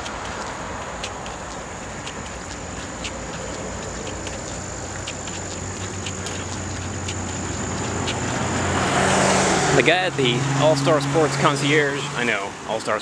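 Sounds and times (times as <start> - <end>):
walking footsteps: 0.0 - 10.0
insects trilling: 0.0 - 13.0
low traffic rumble: 0.0 - 13.0.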